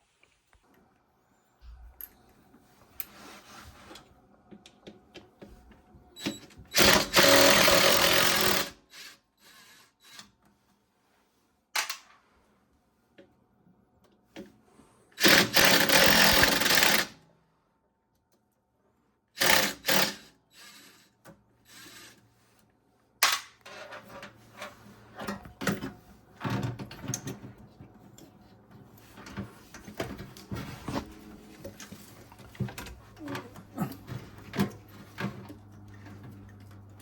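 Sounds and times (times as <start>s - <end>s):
parts and tools clicking and rattling: 15.2s - 17.1s, 23.2s - 37.0s.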